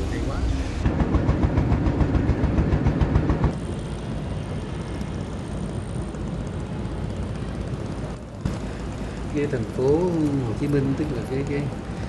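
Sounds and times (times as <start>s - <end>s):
vehicle rumble and hiss: 0.0s - 12.0s.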